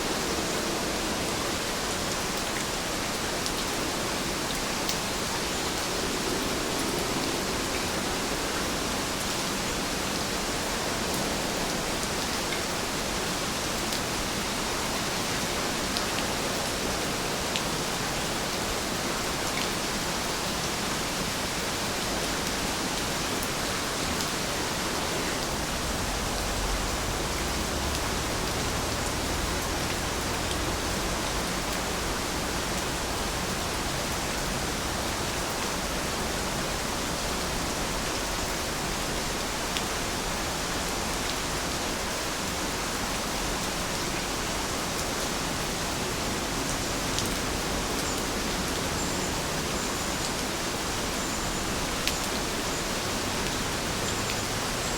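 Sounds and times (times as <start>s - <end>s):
steady rain hiss: 0.0s - 54.9s
faint raindrop ticks: 27.4s - 31.9s.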